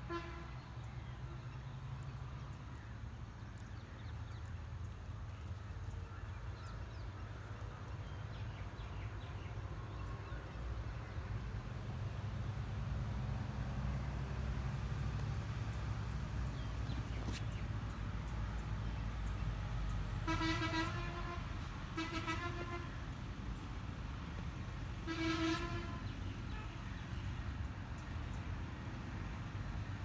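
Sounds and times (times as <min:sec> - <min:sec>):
horn toots: 0:00.0 - 0:00.6, 0:20.2 - 0:23.1, 0:25.0 - 0:26.8.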